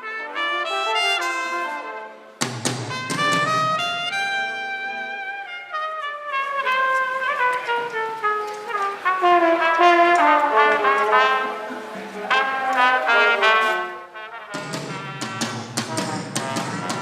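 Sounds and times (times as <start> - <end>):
brass instruments playing phrases: 0.0 - 17.0
drum kit and band playing: 2.4 - 4.4, 14.5 - 17.0.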